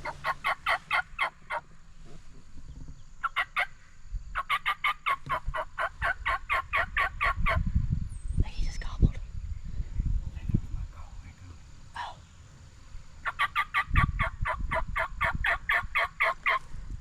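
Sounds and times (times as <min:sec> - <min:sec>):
turkey yelping: 0:00.0 - 0:01.7, 0:03.2 - 0:03.8, 0:04.4 - 0:07.6, 0:13.2 - 0:16.6.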